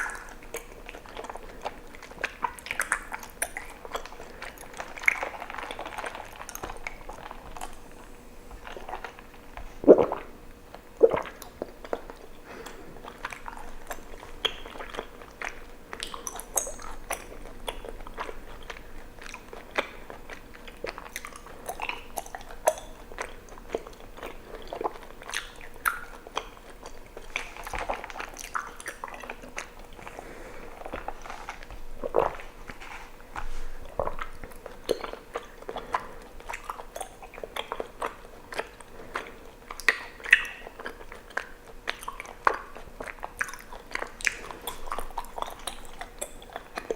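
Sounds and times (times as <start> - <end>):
wet chewing mouth clicks: 0.0 - 46.9.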